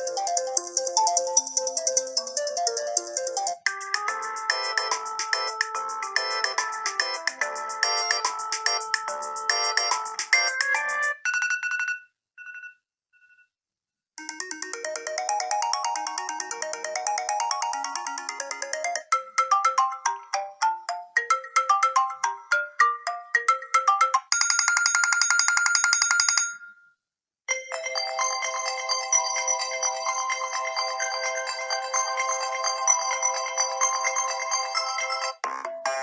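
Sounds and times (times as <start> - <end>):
electronic ringtone melodies: 0.0 - 12.7, 14.2 - 26.7, 27.5 - 36.0.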